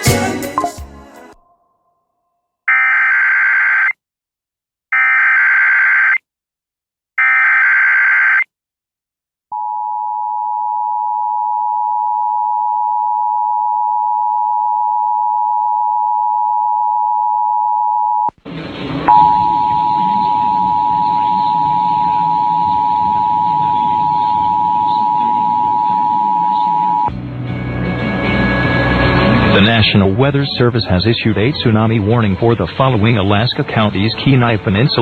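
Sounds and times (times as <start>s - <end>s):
two-tone attention signal: 19.1s - 27.1s.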